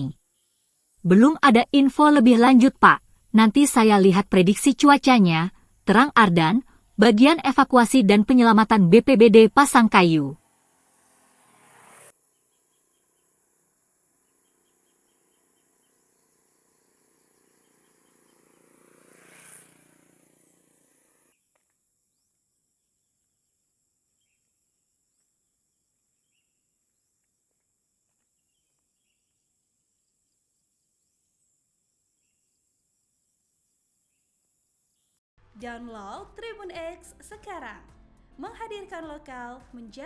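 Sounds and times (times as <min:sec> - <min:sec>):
vehicle passing by: 0:10.4 - 0:12.2, 0:16.3 - 0:21.4
insects trilling: 0:12.1 - 0:21.5
soft bird chirps: 0:12.2 - 0:13.4, 0:14.2 - 0:18.8.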